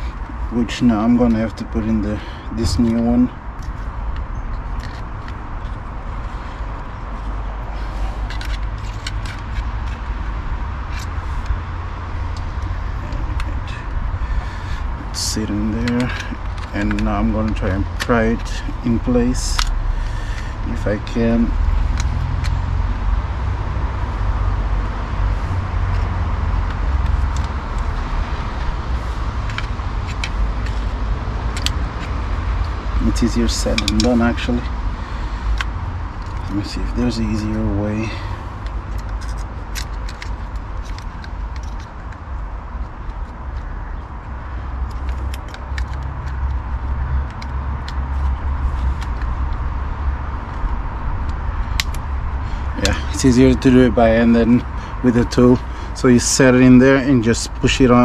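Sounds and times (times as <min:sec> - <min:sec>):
steady low rumble: 0:00.0 - 0:58.0
small metallic clicks: 0:28.6 - 0:34.7, 0:35.4 - 0:49.7, 0:50.4 - 0:52.1.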